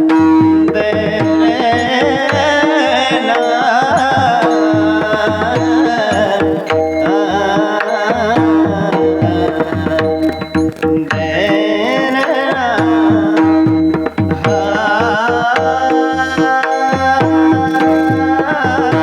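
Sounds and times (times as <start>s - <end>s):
tabla beat: 0.0s - 19.0s
men singing a duet: 0.4s - 19.0s.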